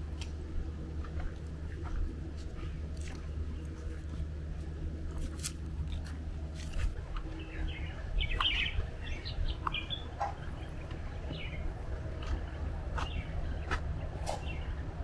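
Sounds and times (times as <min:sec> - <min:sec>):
steady low rumble: 0:00.0 - 0:15.0
birds chirping: 0:07.0 - 0:15.0.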